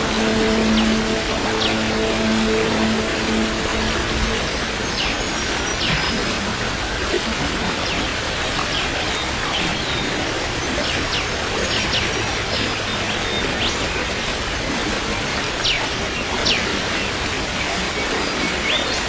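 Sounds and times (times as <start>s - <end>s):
rain hiss: 0.0s - 9.6s.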